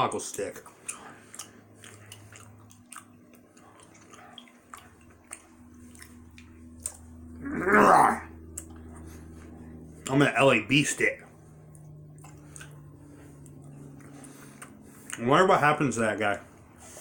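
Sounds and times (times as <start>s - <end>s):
person chewing gummy candy: 0.6s - 7.2s, 11.7s - 12.8s
wet sticky mouth clicks: 0.8s - 7.1s, 11.7s - 12.8s.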